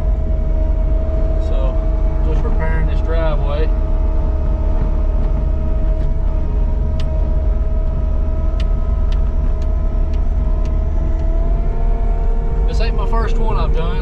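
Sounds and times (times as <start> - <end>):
diesel engine droning: 0.0 - 14.0
sharp clicks: 8.5 - 11.3.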